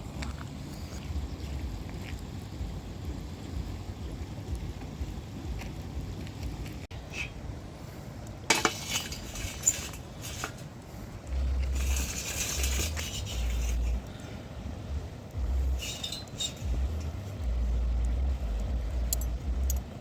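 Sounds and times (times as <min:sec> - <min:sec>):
metal cookware clinking: 0:08.5 - 0:10.6, 0:15.8 - 0:17.1.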